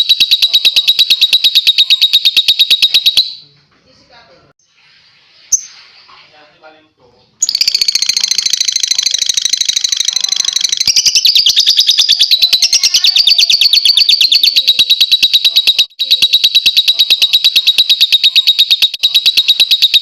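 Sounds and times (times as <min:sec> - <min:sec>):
bird chattering song: 0:00.0 - 0:03.4, 0:07.4 - 0:20.0.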